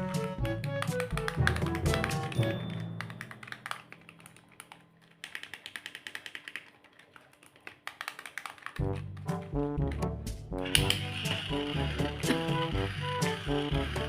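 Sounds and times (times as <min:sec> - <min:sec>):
background music: 0:00.0 - 0:04.5, 0:08.8 - 0:14.0
plastic toy figures clicking: 0:00.0 - 0:10.0.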